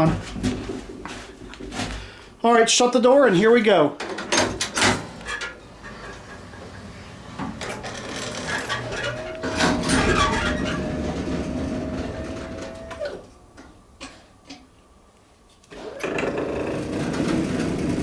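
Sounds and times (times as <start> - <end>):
elevator mechanical running and clatter: 4.1 - 13.8, 15.8 - 18.0
steady whine: 5.5 - 15.4
elevator door clicking shut: 7.4 - 13.2.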